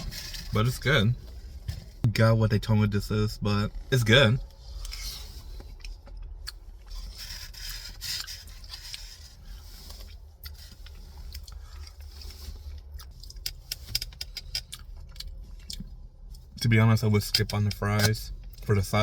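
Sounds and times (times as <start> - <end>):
scraping and rubbing: 6.8 - 12.7.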